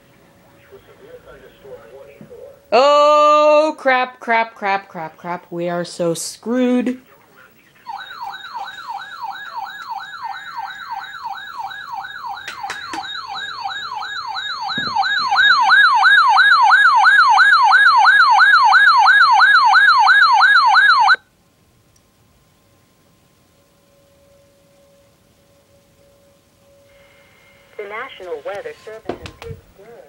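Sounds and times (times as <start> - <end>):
electronic siren yelp: 7.8 - 21.2.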